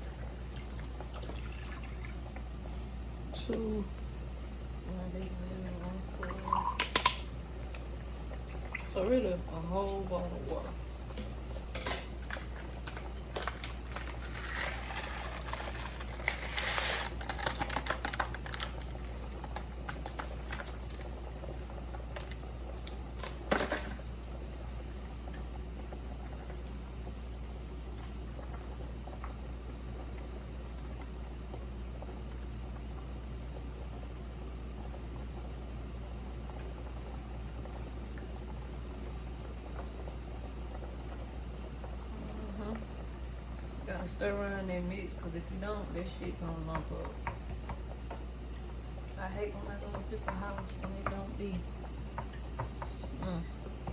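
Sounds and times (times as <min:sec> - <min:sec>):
pot simmering: 0:00.0 - 0:53.9
utensils clattering and water splashing: 0:08.4 - 0:10.0, 0:11.2 - 0:18.7, 0:23.2 - 0:24.0.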